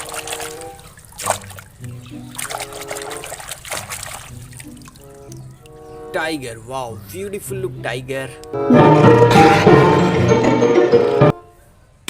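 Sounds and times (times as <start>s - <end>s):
water splashing and trickling: 0.0s - 6.3s
simple background melody: 4.3s - 11.7s.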